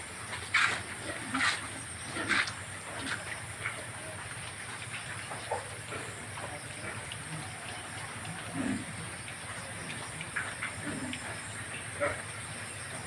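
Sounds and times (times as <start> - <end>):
pig grunts: 0.5 - 3.2, 5.5 - 13.0.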